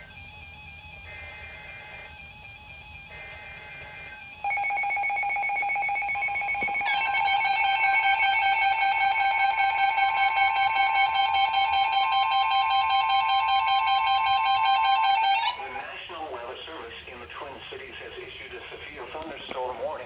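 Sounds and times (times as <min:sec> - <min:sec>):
harsh electronic alert tone: 0:00.0 - 0:16.0.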